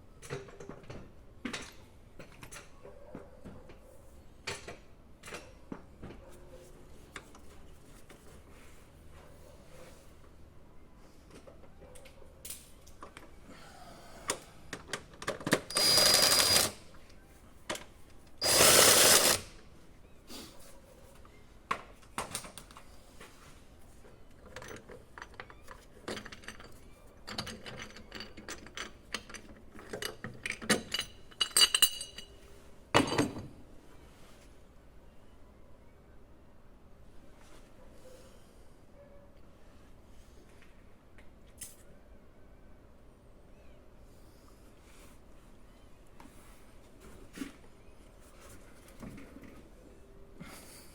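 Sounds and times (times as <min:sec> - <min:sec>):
tools and metal parts clicking: 0:14.8 - 0:16.9, 0:24.3 - 0:32.4
power tool running: 0:15.7 - 0:16.8, 0:18.4 - 0:19.5.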